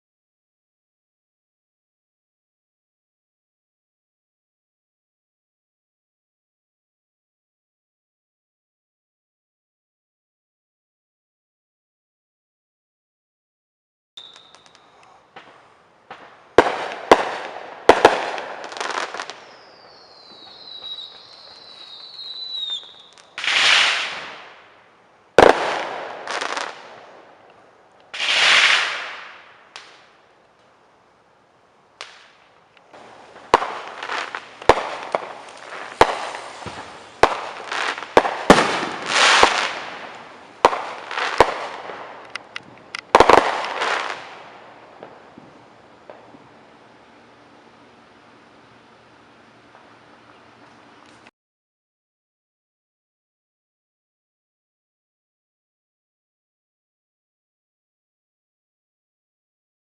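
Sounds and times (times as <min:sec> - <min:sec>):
whistling firework shell: 0:14.2 - 0:15.6, 0:18.0 - 0:24.6
fireworks bangs: 0:14.2 - 0:27.4, 0:28.1 - 0:30.2, 0:32.0 - 0:48.0
fireworks crackling: 0:14.2 - 0:51.3.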